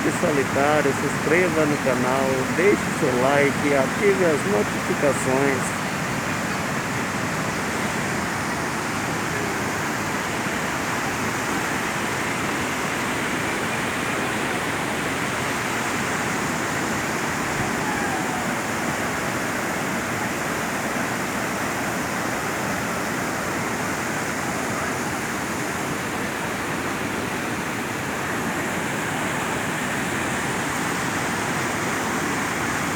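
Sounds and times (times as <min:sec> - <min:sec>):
water rushing over rocks: 0:00.0 - 0:32.9.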